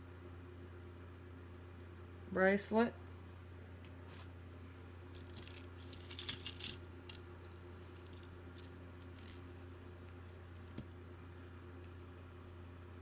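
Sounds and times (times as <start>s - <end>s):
metal jewelry jingling: 5.2s - 9.4s.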